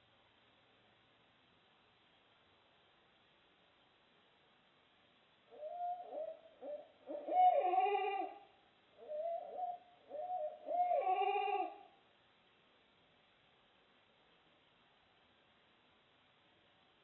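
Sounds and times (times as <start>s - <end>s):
owls hooting: 5.5s - 8.4s, 9.0s - 11.9s.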